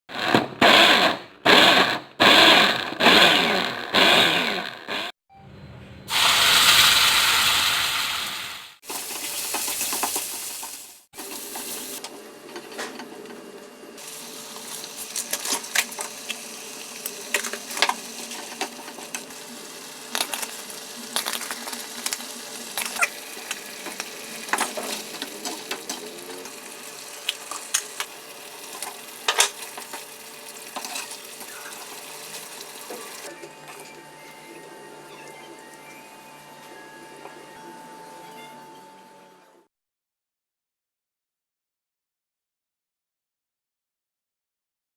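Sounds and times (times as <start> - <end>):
loud hiss: 6.1 - 8.8
food sizzling in a pan: 6.1 - 12.0, 14.0 - 33.3.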